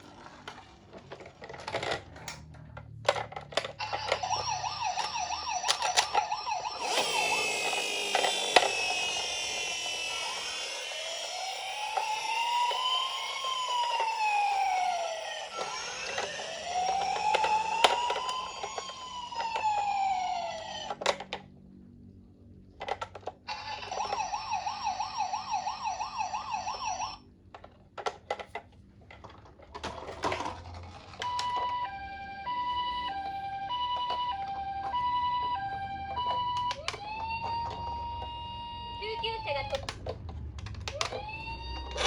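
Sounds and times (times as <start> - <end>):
rising and falling toy siren wail: 3.6 - 21.2, 23.4 - 27.3, 31.2 - 42.0
fast warbling siren: 3.8 - 21.0, 23.5 - 27.2, 31.3 - 39.8, 41.0 - 42.0
two-tone hi-lo siren: 3.8 - 21.1, 23.5 - 27.2, 31.2 - 39.9, 40.9 - 42.0.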